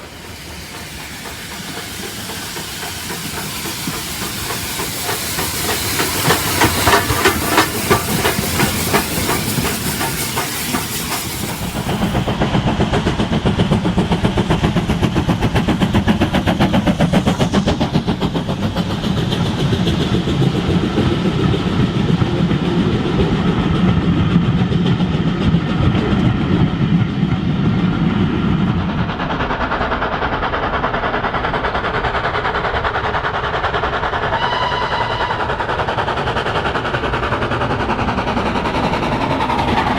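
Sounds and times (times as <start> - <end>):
wheels clicking over track: 0.0 - 12.4
model steam train chuffing: 0.0 - 39.9.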